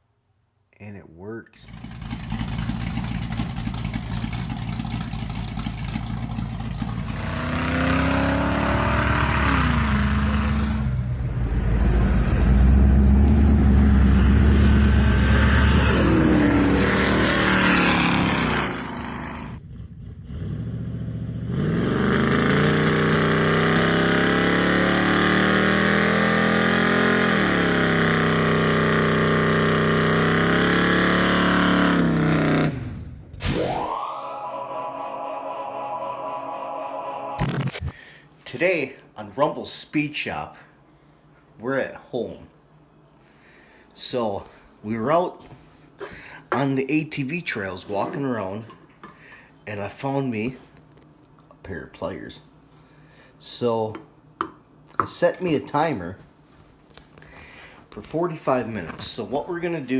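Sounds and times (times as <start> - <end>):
engine revving: 1.6 - 33.2.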